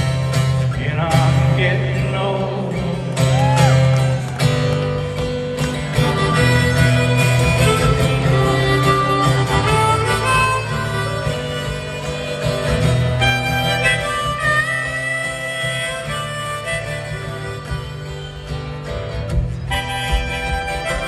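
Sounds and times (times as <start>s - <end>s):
strummed acoustic guitar: 0.0s - 21.0s
harmonica playing: 4.6s - 21.0s.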